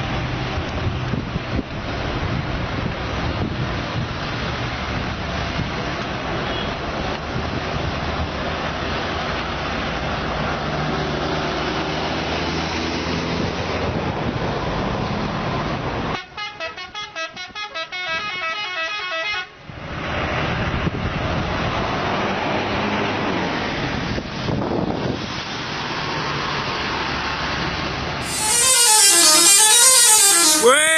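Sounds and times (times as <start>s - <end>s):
road and engine noise: 0.0s - 30.9s
bus horn playing a tune: 16.2s - 19.6s, 28.2s - 30.9s.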